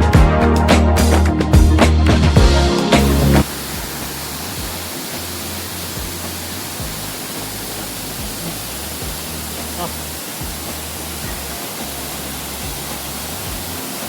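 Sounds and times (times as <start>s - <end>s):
background music: 0.0s - 14.0s
waterfall rushing: 2.8s - 14.0s.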